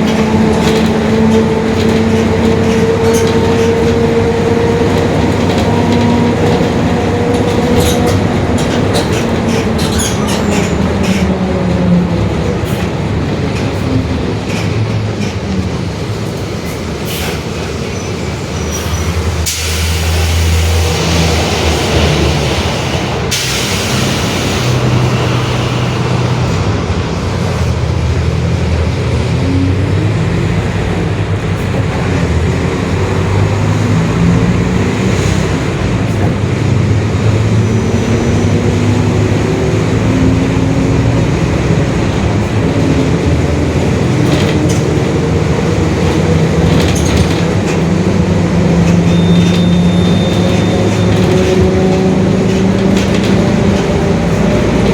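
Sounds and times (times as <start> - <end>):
bus diesel engine accelerating: 0.0 - 54.9
air hiss: 19.4 - 25.1.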